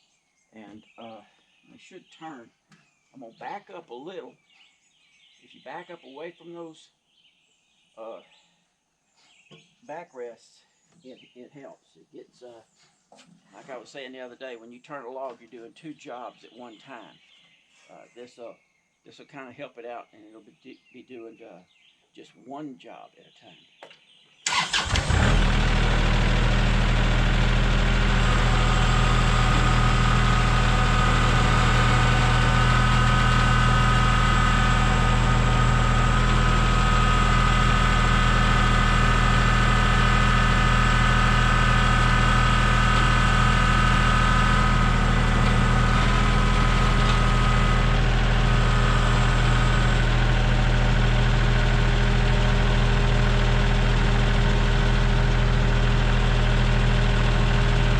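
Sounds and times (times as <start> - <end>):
sawmill engine starting and idling: 24.5 - 57.9.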